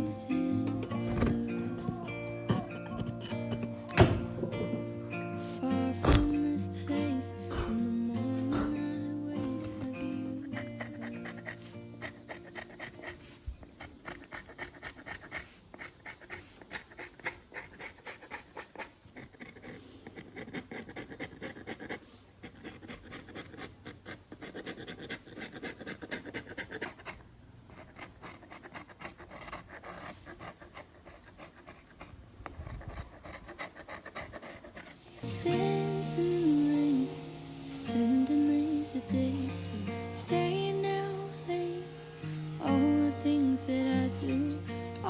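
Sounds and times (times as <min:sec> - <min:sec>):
hand tool working wood: 0:00.0 - 0:06.6, 0:34.2 - 0:45.0.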